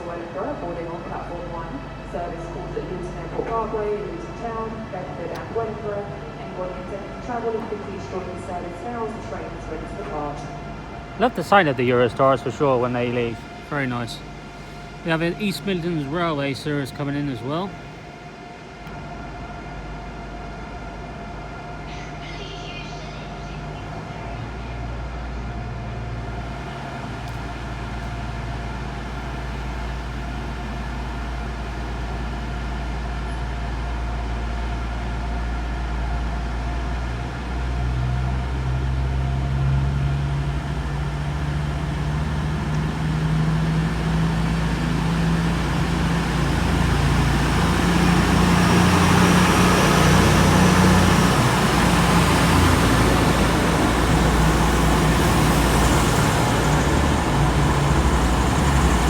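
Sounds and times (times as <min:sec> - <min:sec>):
diesel train arriving: 0:00.0 - 0:59.0.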